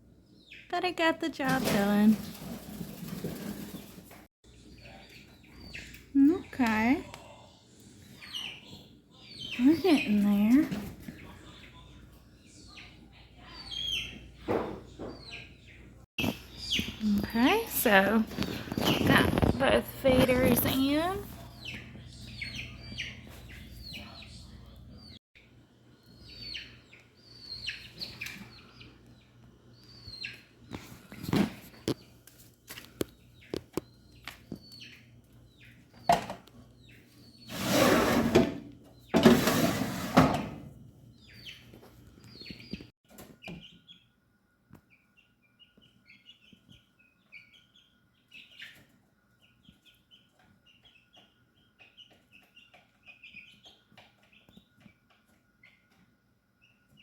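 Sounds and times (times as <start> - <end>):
chicks peeping: 0.2 - 37.5, 41.1 - 44.1, 44.8 - 57.0
loud scraping noises: 37.5 - 38.6, 39.2 - 40.6.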